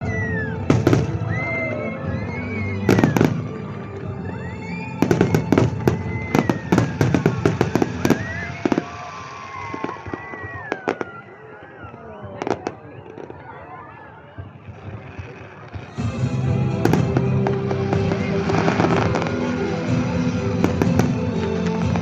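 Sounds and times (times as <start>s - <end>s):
fireworks exploding: 0.1s - 22.0s.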